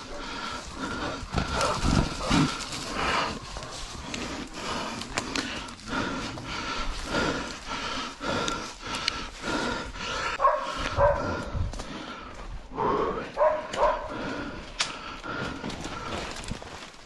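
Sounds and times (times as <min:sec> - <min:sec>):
dogs barking: 0:00.0 - 0:03.9, 0:10.3 - 0:11.6, 0:13.4 - 0:14.4
scuffling and rustling: 0:00.0 - 0:05.3.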